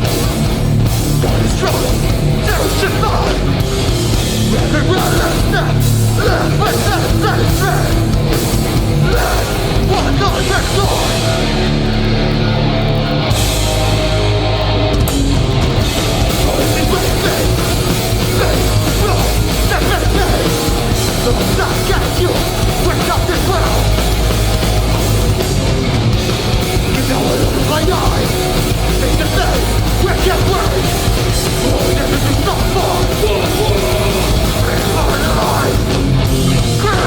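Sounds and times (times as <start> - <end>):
bass guitar: 0.0 - 37.0
distorted electric guitars: 0.0 - 37.0
drums: 0.0 - 37.0.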